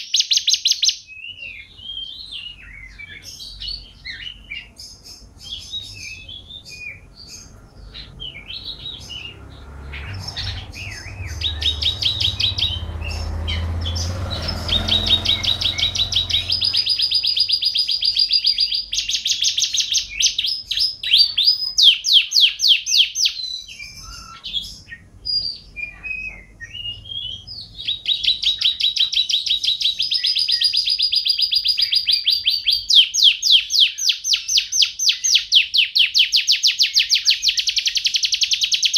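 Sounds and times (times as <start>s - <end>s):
canary singing trills: 0.0s - 38.9s
low rumble: 7.6s - 17.6s.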